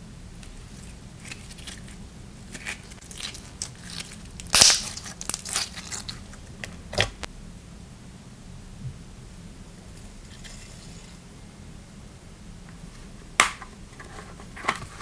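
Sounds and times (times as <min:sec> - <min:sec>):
slime crackling and popping: 0:00.4 - 0:06.4.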